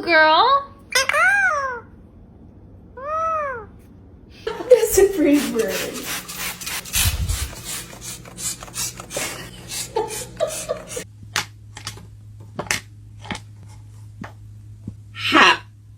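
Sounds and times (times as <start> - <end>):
steady low hum: 4.3 - 11.3.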